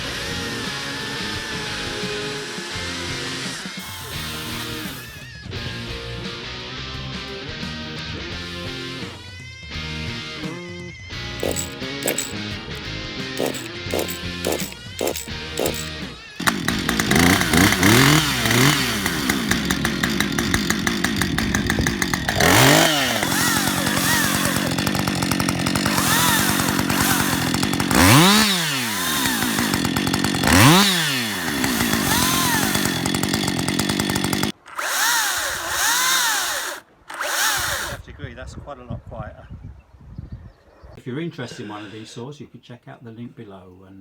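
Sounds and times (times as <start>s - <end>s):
petrol chainsaw revving: 0.0s - 5.2s, 11.4s - 12.8s, 13.4s - 38.0s
battery chainsaw whirring: 0.0s - 5.3s, 11.4s - 12.8s, 13.4s - 38.0s.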